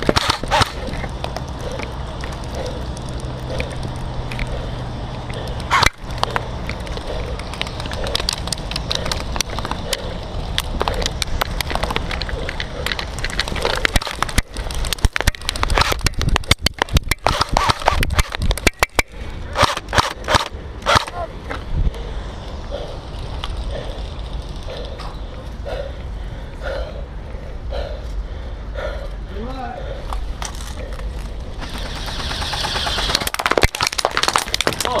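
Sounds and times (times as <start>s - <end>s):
airsoft gunfire clicks and snaps: 0.0s - 4.5s, 5.2s - 21.2s.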